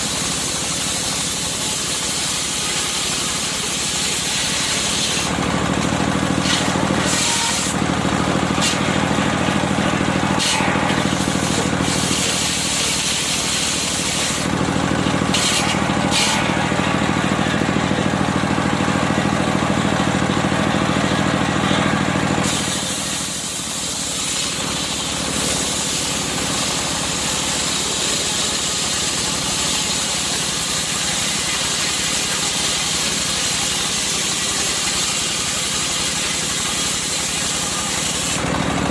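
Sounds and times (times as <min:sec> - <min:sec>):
engine hum: 0:03.2 - 0:38.9
circular saw hissing: 0:06.3 - 0:07.9, 0:08.5 - 0:14.6, 0:22.4 - 0:38.4.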